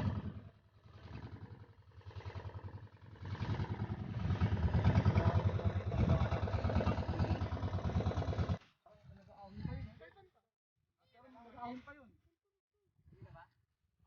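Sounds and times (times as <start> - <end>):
small engine running: 0.0 - 8.6.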